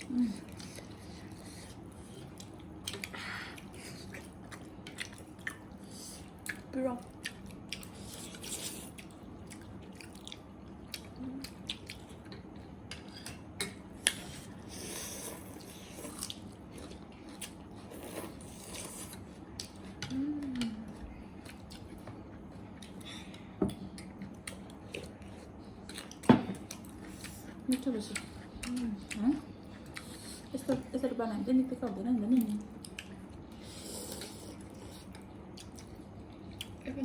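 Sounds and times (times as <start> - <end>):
chewing and biting food: 0.3 - 20.8, 21.4 - 30.9, 32.3 - 36.8.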